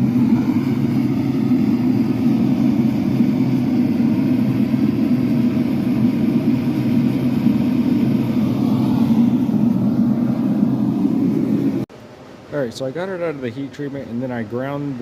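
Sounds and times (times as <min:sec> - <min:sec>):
forge running: 0:00.0 - 0:11.9.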